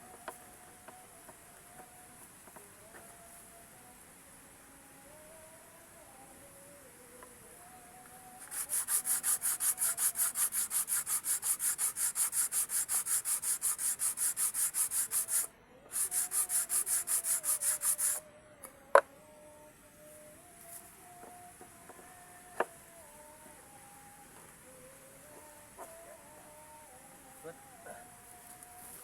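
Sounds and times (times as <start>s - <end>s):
hand sanding with sandpaper: 8.4s - 18.2s.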